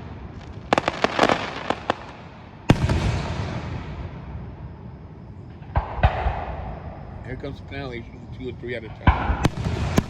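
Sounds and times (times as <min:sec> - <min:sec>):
firework boom: 0:02.7 - 0:04.5.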